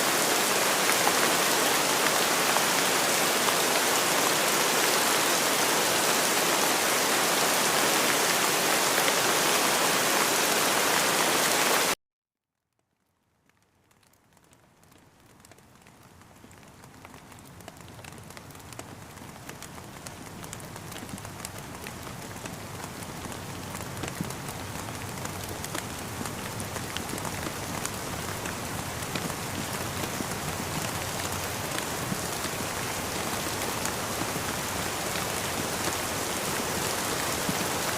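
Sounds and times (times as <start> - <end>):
rain falling: 0.0 - 12.0, 12.9 - 37.9.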